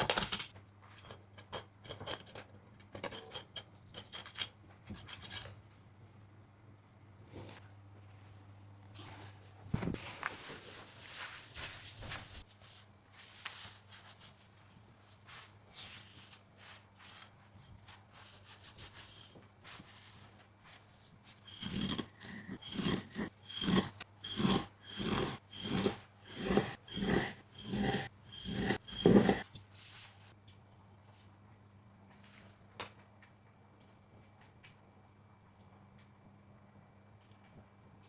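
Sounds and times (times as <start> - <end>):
scratchy rubbing strokes: 10.8 - 30.3.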